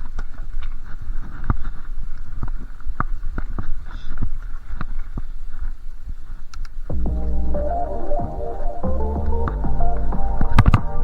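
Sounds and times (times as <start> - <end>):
bike rolling over rough trail: 0.0 - 6.8.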